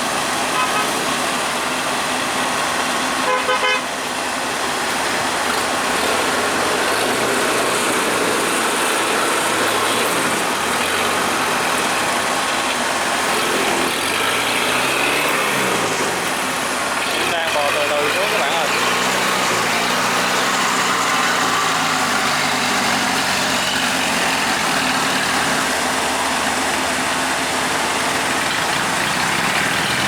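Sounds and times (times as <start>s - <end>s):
vehicle engines running: 0.0s - 30.0s
short horn toot: 0.5s - 1.0s.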